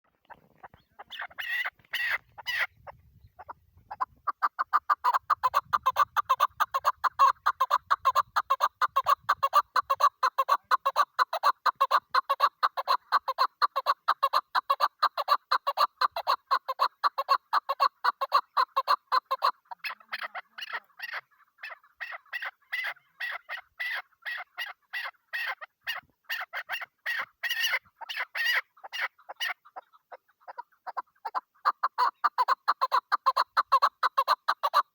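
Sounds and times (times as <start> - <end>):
partridge calling: 0.1 - 34.9.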